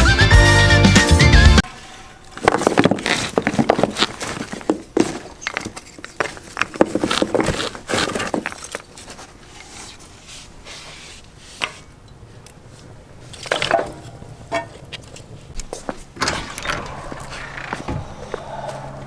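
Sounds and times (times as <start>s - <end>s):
knocks and clunks: 13.4s - 19.0s.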